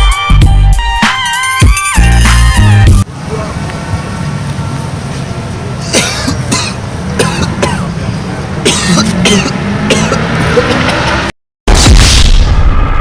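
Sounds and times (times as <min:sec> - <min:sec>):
person coughing: 0:05.8 - 0:08.0, 0:08.6 - 0:11.2.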